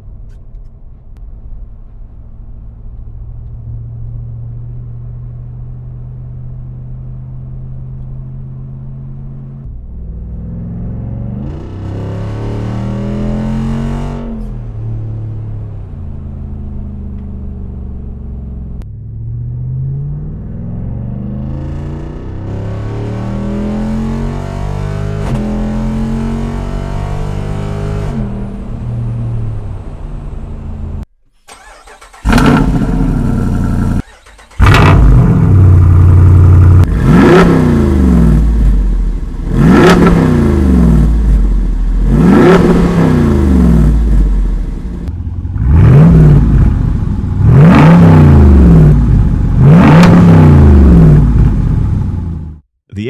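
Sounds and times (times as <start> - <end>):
loud engine exhaust revving: 19.2 - 31.0, 31.9 - 52.6.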